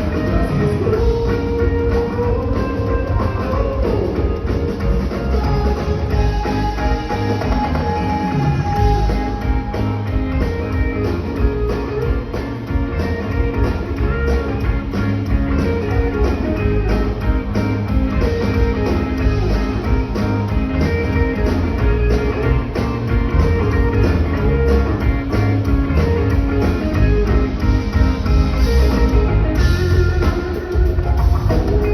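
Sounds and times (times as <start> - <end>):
instrumental band music: 0.0 - 31.9
lead guitar: 0.0 - 31.9
steady drum beat: 0.0 - 31.9.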